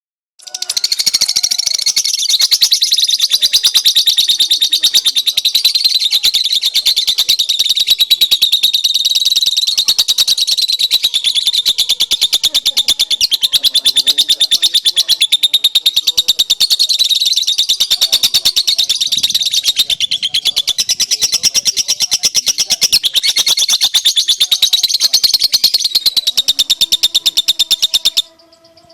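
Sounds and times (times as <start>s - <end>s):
lovebird chattering trill: 0.4s - 28.9s.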